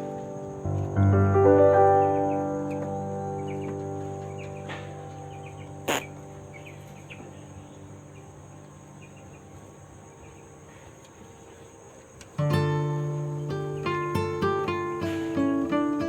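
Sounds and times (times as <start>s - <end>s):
crickets chirring: 0.0s - 16.0s
bird chirps: 1.8s - 11.7s
guitar chord: 12.4s - 16.0s.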